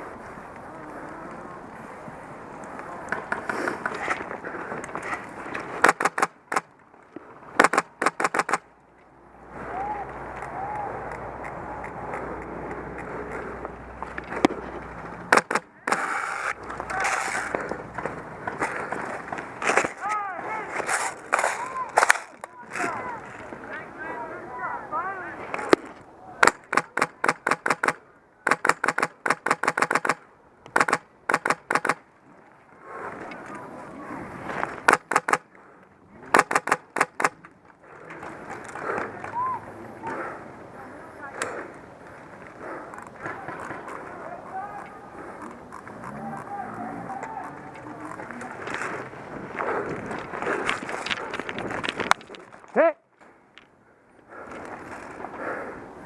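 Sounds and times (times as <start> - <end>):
airsoft rifle shots: 5.8 - 6.7, 7.6 - 8.7, 15.3 - 17.5, 26.4 - 32.0, 34.8 - 35.5, 36.3 - 37.4.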